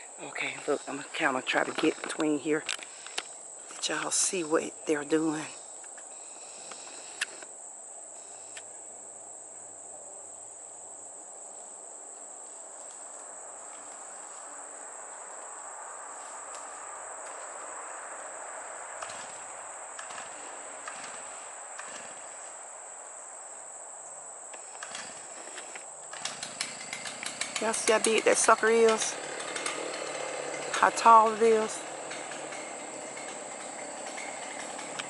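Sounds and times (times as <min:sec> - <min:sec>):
insect trilling: 0:00.0 - 0:11.9, 0:12.8 - 0:35.0
faint ticks: 0:01.7 - 0:04.1, 0:05.8 - 0:07.5, 0:08.4 - 0:08.7.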